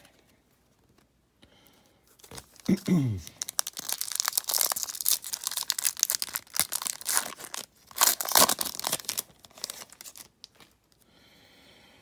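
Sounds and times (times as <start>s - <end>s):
wrapper ripping open: 2.2s - 10.9s
wrapper crinkling: 2.2s - 11.0s.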